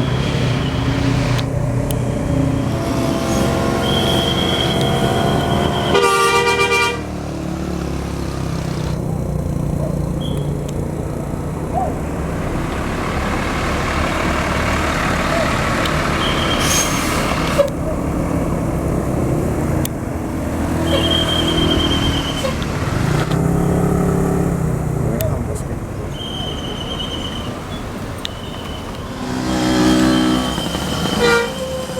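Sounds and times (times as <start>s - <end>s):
heavy bus engines passing: 0.0s - 31.9s
road noise: 0.0s - 31.9s
musical bus horn: 2.5s - 7.3s, 16.0s - 17.7s, 28.3s - 31.9s.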